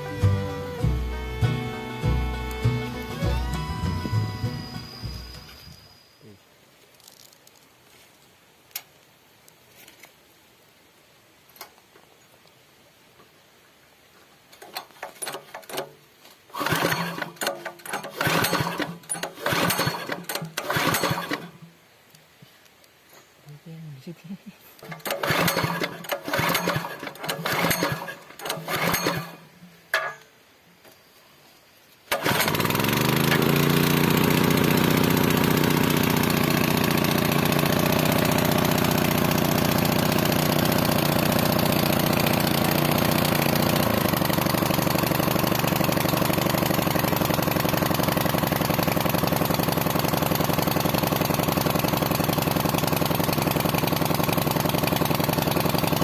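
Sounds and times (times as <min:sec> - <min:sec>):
water pump engine running: 0:00.0 - 0:05.7, 0:16.5 - 0:21.6, 0:24.8 - 0:29.4, 0:32.1 - 0:56.0.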